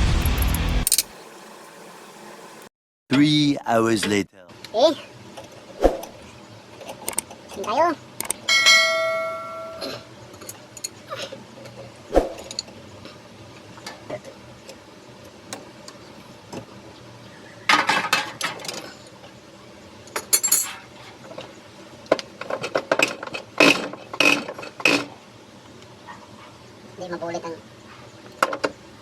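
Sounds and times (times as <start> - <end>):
metal parts and tools clinking: 0.1 - 1.1, 10.4 - 11.0, 11.7 - 12.7, 20.1 - 21.0.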